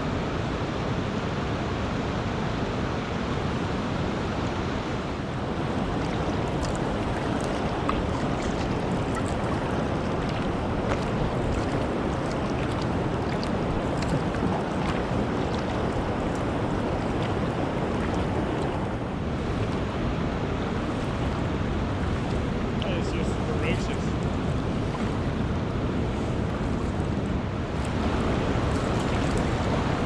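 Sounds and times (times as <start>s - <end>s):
wind rumbling on microphone: 0.0s - 30.0s
river water rushing: 0.7s - 30.0s
water splashes and drips: 5.5s - 19.9s, 20.7s - 25.4s, 26.1s - 30.0s.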